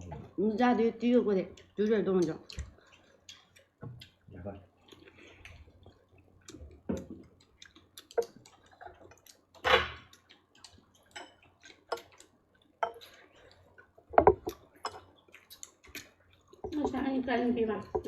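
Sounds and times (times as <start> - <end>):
tableware clattering: 14.2 - 15.0.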